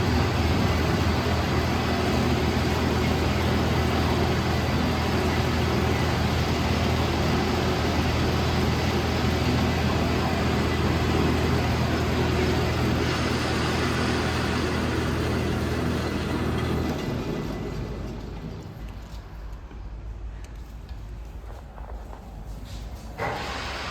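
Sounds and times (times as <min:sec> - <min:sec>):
lathe running: 0:00.0 - 0:19.1, 0:23.2 - 0:23.9
hiss of machining: 0:23.2 - 0:23.9.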